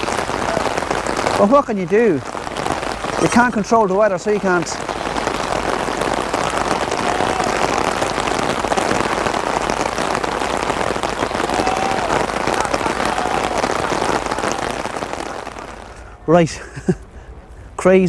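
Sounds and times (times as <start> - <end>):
torrential rain pouring: 0.0 - 18.0.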